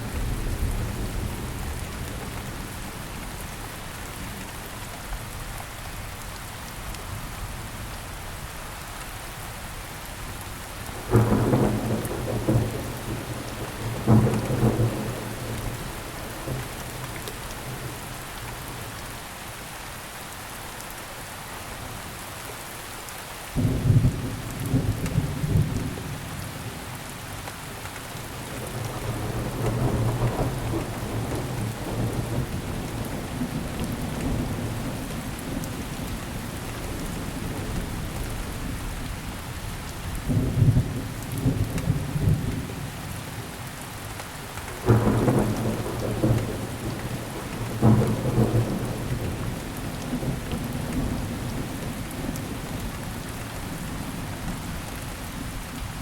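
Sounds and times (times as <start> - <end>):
steady rain: 0.0 - 56.0
rolling thunder rumble: 11.1 - 18.0, 28.4 - 39.1, 44.7 - 52.9.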